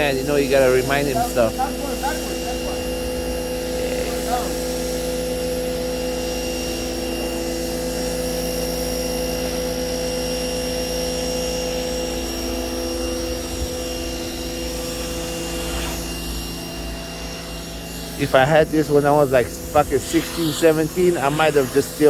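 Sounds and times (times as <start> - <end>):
pressure washer motor humming: 0.0 - 22.0
water spraying: 12.0 - 22.0.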